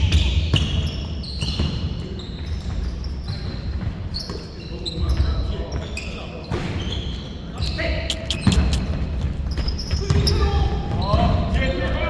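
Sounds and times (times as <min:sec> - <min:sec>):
sneakers squeaking on floor: 0:00.0 - 0:11.7
ball bouncing on court: 0:08.2 - 0:11.6.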